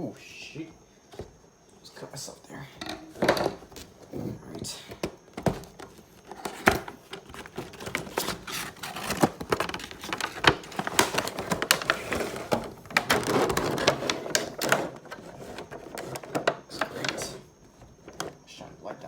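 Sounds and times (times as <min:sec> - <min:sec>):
plastic rustling: 0:02.9 - 0:18.4
plastic packaging crackling: 0:05.4 - 0:17.3.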